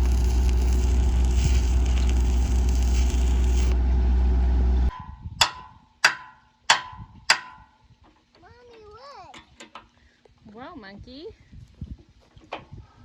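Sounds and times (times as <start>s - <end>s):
welding crackling hiss: 0.0s - 3.8s
welding machine humming: 0.0s - 3.8s
sharp metal taps ringing: 5.0s - 7.7s.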